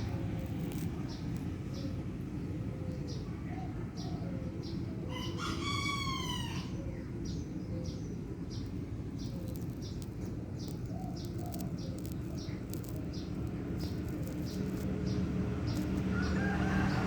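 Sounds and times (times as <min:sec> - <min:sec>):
small bird chirping: 0:00.0 - 0:02.0, 0:07.4 - 0:17.0
low background rumble: 0:00.0 - 0:17.0
rooster crowing: 0:05.1 - 0:06.8, 0:16.1 - 0:17.0.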